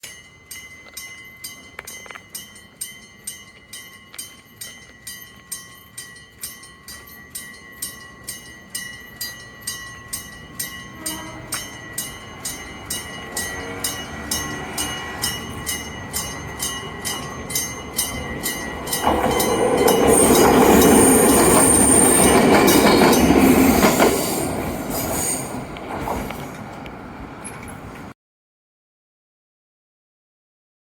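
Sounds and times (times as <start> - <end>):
level crossing bell ringing: 0.0 - 24.0
train passing on rails: 0.1 - 28.2.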